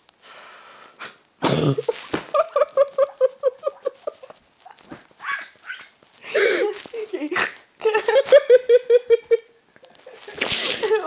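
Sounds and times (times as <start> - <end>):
person snorting: 1.0 - 2.0.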